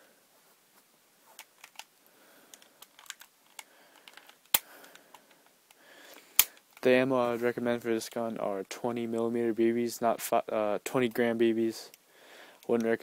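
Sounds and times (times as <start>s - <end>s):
plastic pistol clicks and rattles: 1.4s - 1.9s, 2.5s - 6.9s
sharp snap: 6.3s - 6.6s.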